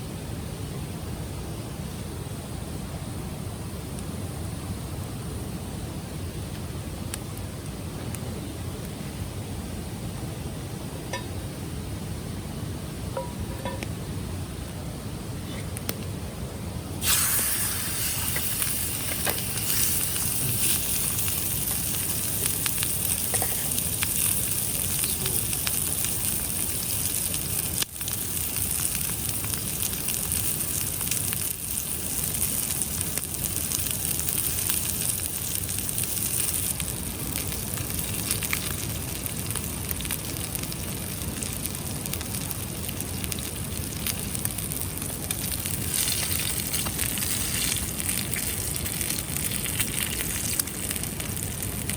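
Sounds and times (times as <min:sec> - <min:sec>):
wood fire crackling: 0:01.2 - 0:51.9
food sizzling in a skillet: 0:17.0 - 0:43.4, 0:44.0 - 0:51.9.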